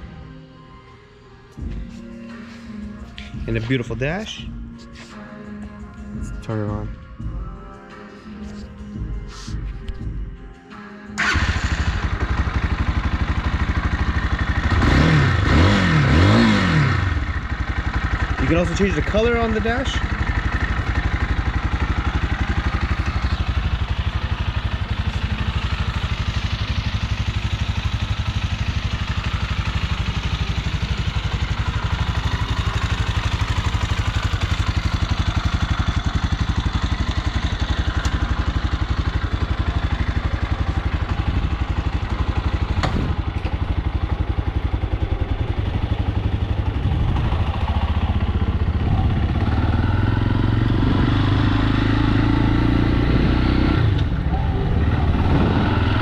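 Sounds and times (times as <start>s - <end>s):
motorcycle engine idling: 11.2s - 53.1s, 53.7s - 56.0s.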